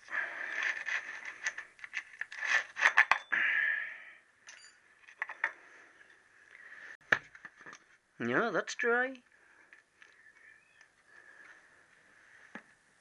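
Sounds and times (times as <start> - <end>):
metal parts and tools clinking: 0.2 - 3.4, 4.4 - 6.2
faint ringing clink: 4.4 - 5.0.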